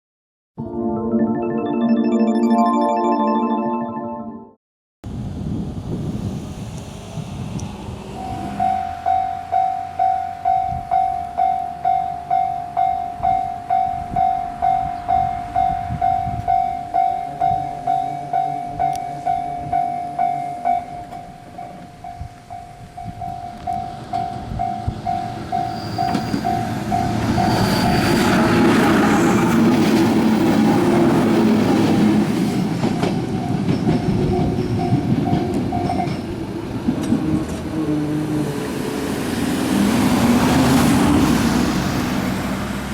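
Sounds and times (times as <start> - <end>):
approaching train rumble: 5.1 - 42.9.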